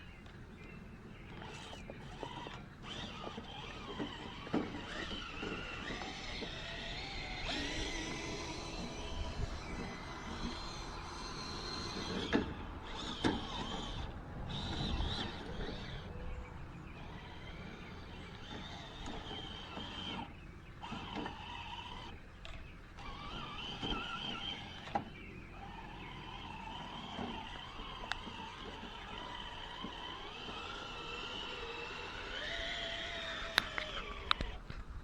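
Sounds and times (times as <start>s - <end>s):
small electric motor whining: 0.0s - 35.0s
sharp clicks: 27.0s - 34.9s.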